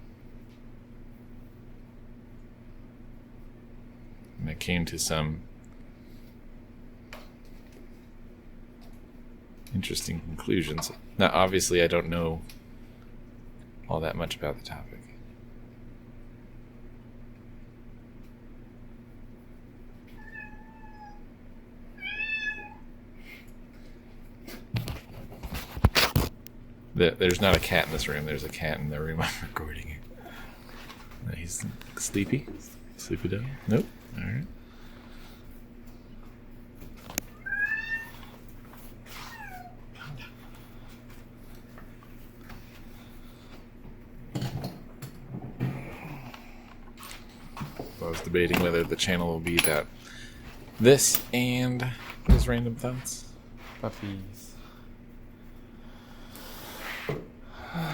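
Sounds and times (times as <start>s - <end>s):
low steady hum: 0.0s - 57.9s
cat meowing: 20.2s - 21.2s, 22.0s - 22.8s, 37.4s - 38.2s.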